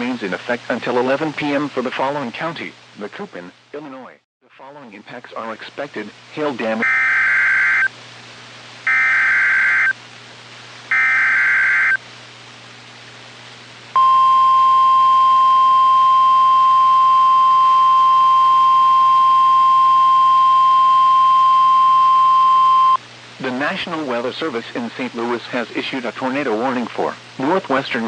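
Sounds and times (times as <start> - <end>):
steady alarm tone: 6.8 - 7.9, 8.9 - 10.0, 10.9 - 12.0, 14.0 - 23.0
warbling data tones: 8.9 - 10.0, 10.9 - 12.0.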